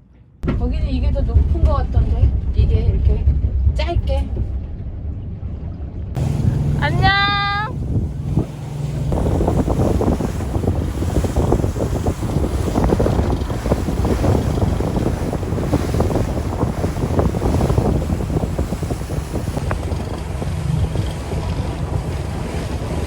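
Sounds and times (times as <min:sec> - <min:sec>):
boat engine rumble: 0:00.2 - 0:23.0
wind buffeting microphone: 0:00.4 - 0:23.0
water rushing: 0:06.2 - 0:23.0.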